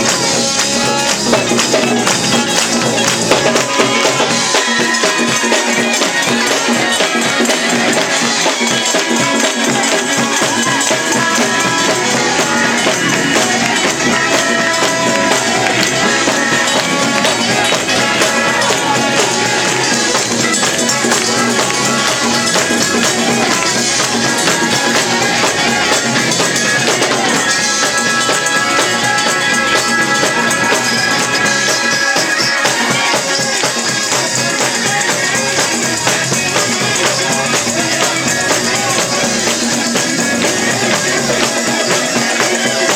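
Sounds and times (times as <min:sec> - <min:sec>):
gospel band playing: 0:00.0 - 0:42.9
tambourine shaking: 0:00.0 - 0:42.9.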